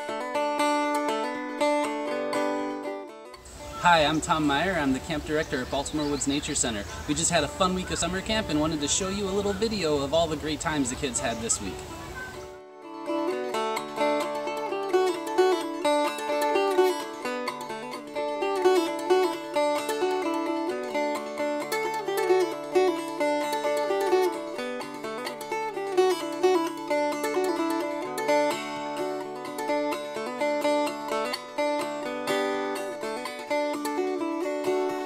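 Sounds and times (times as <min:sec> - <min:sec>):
picked plucked-string music: 0:00.0 - 0:35.0.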